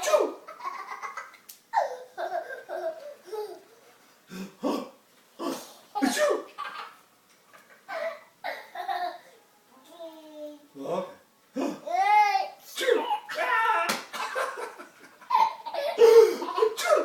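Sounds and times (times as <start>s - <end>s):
small child laughing: 0.0s - 3.7s, 6.0s - 9.3s, 14.2s - 17.0s.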